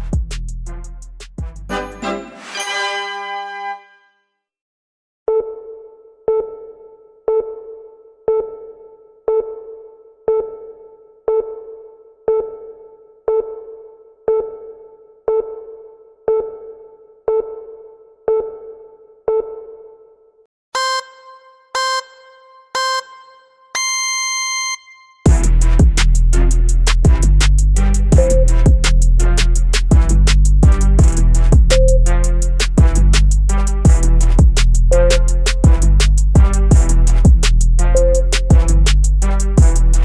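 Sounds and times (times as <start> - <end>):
short high beeps: 20.8 - 25.2
long final beep: 20.8 - 25.3.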